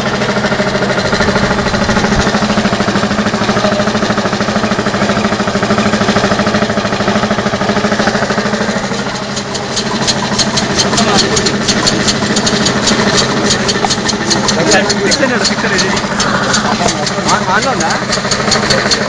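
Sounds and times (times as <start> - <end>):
air-powered engine running: 0.0 - 19.0
sharp clicks: 8.0 - 19.0.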